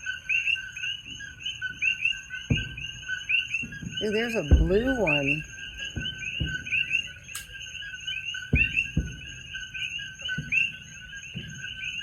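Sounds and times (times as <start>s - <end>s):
distant fireworks booming: 0.0s - 12.0s
frogs calling: 0.0s - 12.0s.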